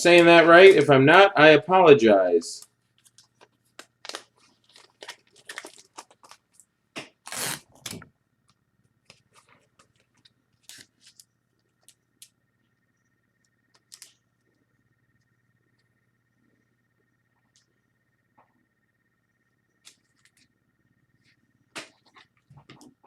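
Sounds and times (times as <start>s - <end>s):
trading cards rustling: 2.9s - 7.9s.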